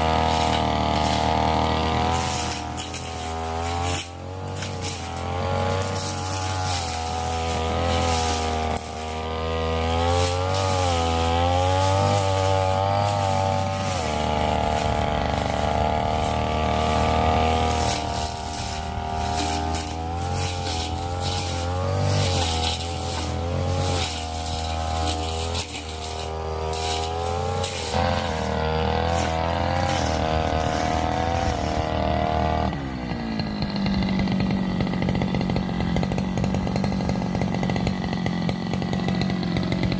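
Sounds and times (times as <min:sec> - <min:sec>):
brush cutter engine running: 0:00.0 - 0:39.9
ticks of stems being struck: 0:00.2 - 0:31.5.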